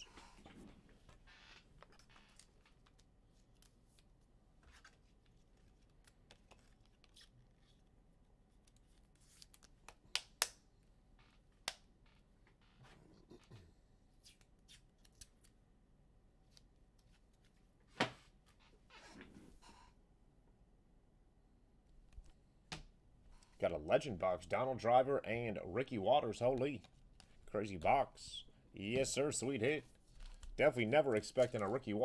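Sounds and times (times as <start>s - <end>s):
card packaging rustling: 29.9s - 32.0s.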